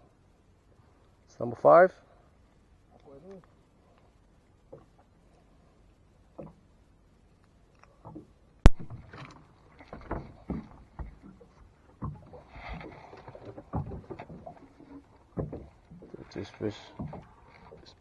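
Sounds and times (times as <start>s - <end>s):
sharp loud snap: 8.7s - 9.0s.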